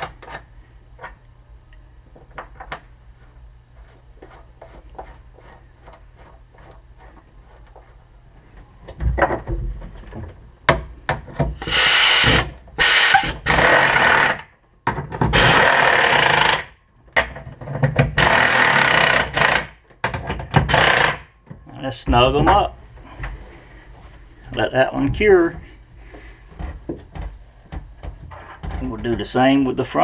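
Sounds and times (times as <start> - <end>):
knocks of handling parts: 8.6 - 13.6, 14.8 - 15.4, 17.1 - 18.3, 19.4 - 23.4, 24.0 - 29.4
power drill driving bolts: 11.6 - 14.5, 15.3 - 16.7, 18.1 - 19.8, 20.5 - 21.3.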